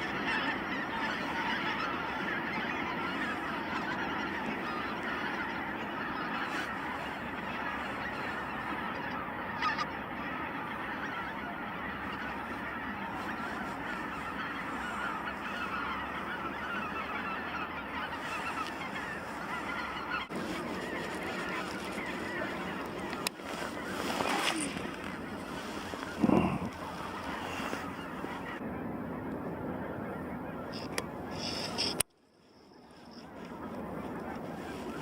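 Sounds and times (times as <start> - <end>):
flock of waterfowl calling: 0.0 - 35.0.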